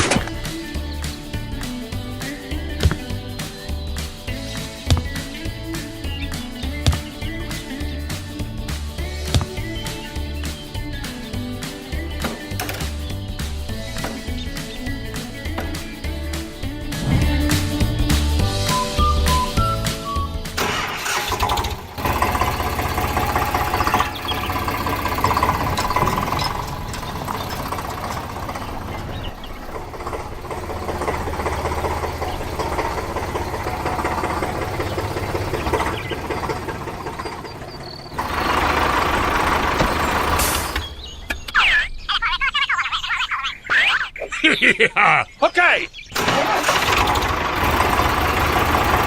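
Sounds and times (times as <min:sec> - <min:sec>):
background music: 0:00.0 - 0:37.5
toy vehicle engine sound: 0:18.7 - 0:41.0, 0:46.2 - 0:49.0.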